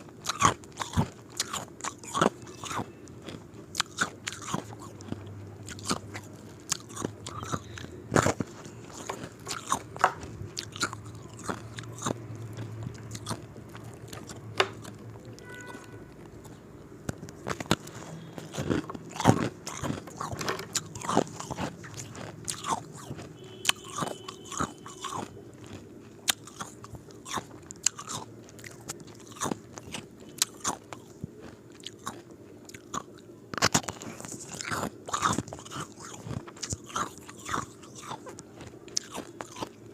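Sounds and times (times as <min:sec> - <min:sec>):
ice cubes crunched between teeth: 0:17.2 - 0:32.2, 0:32.8 - 0:39.8.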